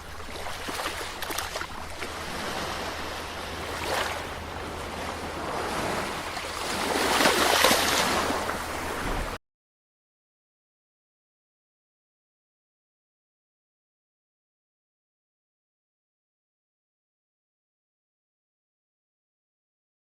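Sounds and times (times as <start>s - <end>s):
ocean waves washing in: 0.0s - 9.4s.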